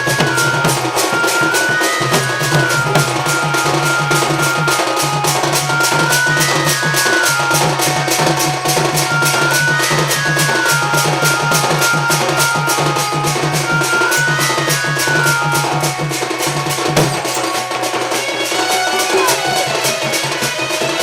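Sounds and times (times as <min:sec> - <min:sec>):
high melody of held notes: 0:00.0 - 0:20.9
fast even percussion: 0:00.0 - 0:21.0
steady low drum line: 0:00.0 - 0:21.0.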